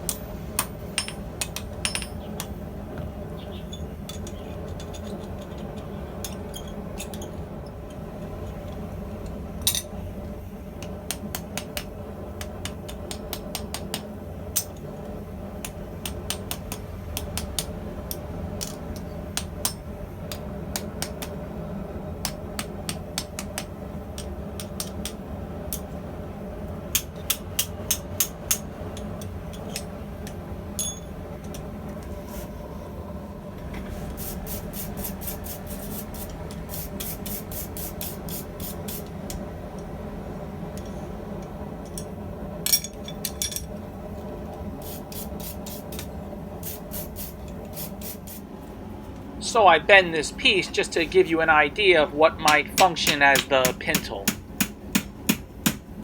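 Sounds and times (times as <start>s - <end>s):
hammer striking steel on anvil: 0.0s - 2.6s, 52.5s - 55.9s
steady low hum: 0.0s - 56.0s.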